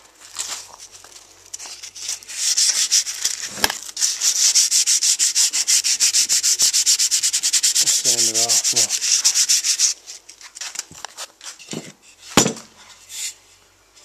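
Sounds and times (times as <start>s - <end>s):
hand sanding strokes: 1.6s - 10.9s.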